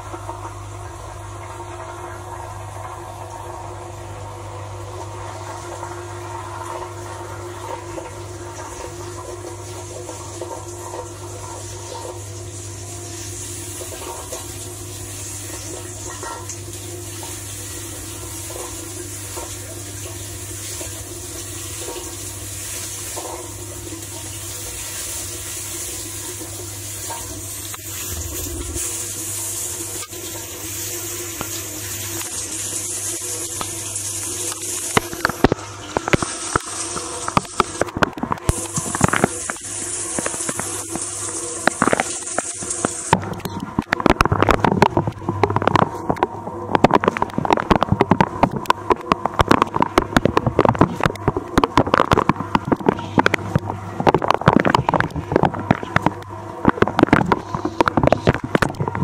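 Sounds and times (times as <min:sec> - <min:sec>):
water spraying in dishwasher: 0:08.7 - 0:59.0
pump humming: 0:23.4 - 0:59.0.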